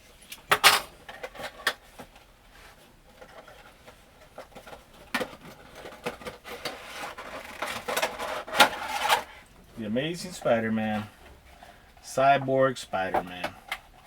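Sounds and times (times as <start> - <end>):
cardboard box and plastic crinkling: 1.1 - 9.4.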